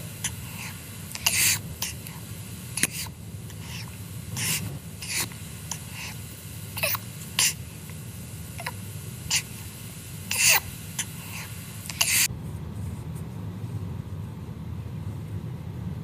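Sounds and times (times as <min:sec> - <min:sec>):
baby sucking on a bottle: 0:02.8 - 0:06.2.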